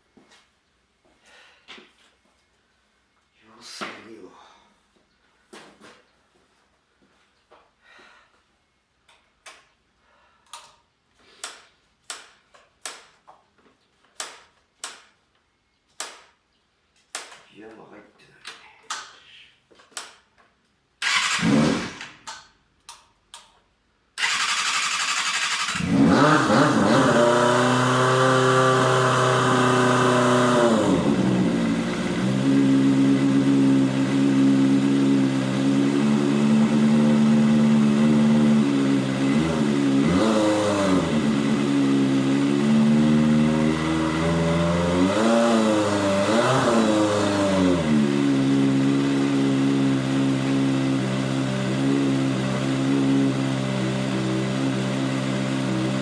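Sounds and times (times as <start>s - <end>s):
engine starter clicks: 21.0s - 22.5s, 24.2s - 25.8s.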